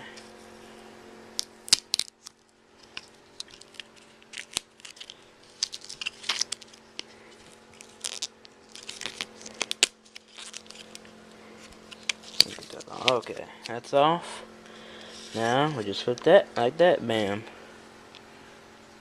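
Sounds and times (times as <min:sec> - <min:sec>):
faint steady hum: 0:00.0 - 0:19.0
plastic film crinkling: 0:01.7 - 0:14.0.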